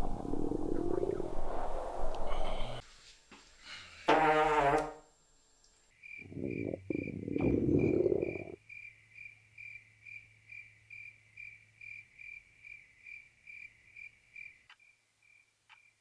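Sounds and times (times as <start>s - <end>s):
cricket chirping: 5.4s - 16.0s.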